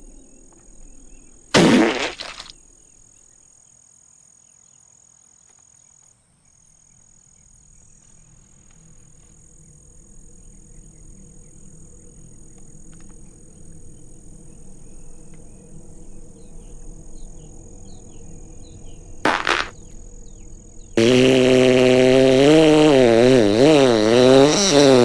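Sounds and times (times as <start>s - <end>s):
insect trill: 0.0s - 25.0s
brief loud burst: 1.5s - 2.5s, 19.3s - 19.8s
low horn-like drone wavering: 19.8s - 25.0s.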